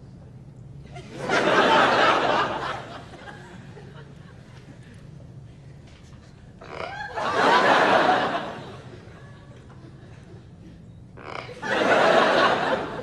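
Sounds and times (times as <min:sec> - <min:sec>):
studio audience laughing: 0:01.0 - 0:04.6, 0:07.0 - 0:10.6, 0:11.5 - 0:13.0.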